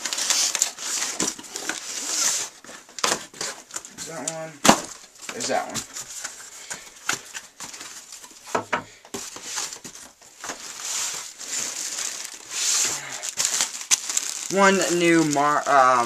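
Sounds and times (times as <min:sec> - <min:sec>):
packaging crinkling and rustling: 0:00.0 - 0:16.0.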